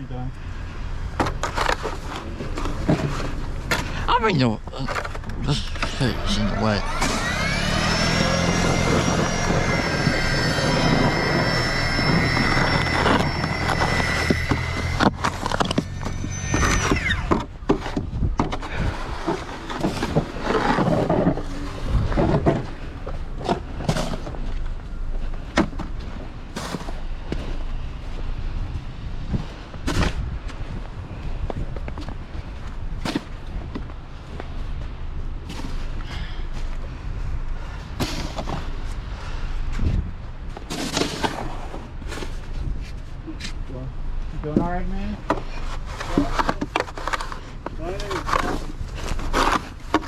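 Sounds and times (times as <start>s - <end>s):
knocks and scraping: 1.1s - 50.0s
motor whining: 4.9s - 17.6s.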